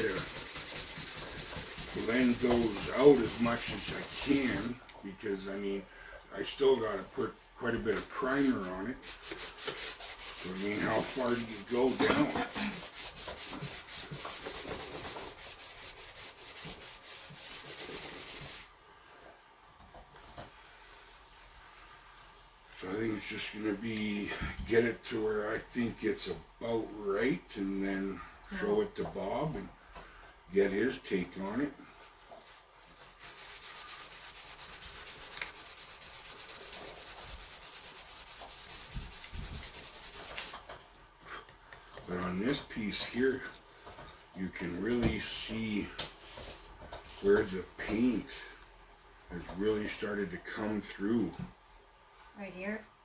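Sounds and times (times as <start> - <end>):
sandpaper rubbing on plastic: 0.0 - 4.8, 8.4 - 18.7, 33.1 - 40.6.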